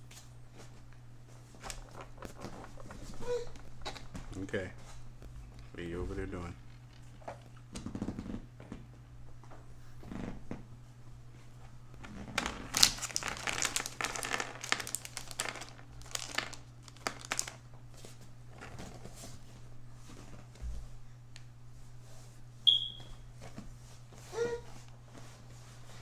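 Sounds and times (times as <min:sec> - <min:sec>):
packaging crinkling: 0:01.5 - 0:05.6, 0:12.1 - 0:19.1
short high squeak: 0:22.7 - 0:23.1.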